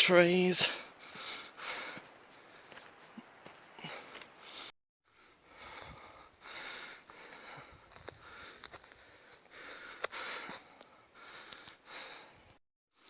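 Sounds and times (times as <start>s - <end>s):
heavy breathing: 0.6s - 2.9s, 3.7s - 12.5s.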